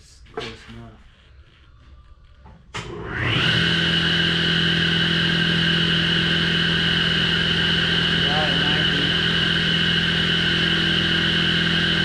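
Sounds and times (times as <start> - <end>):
power tool motor whine: 2.8 - 12.0.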